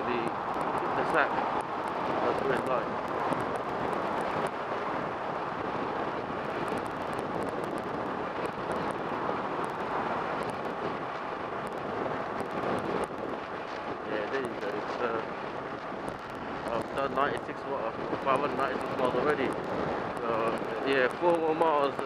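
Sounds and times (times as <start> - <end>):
motorcycle running: 0.0 - 22.0
wind buffeting microphone: 0.0 - 22.0.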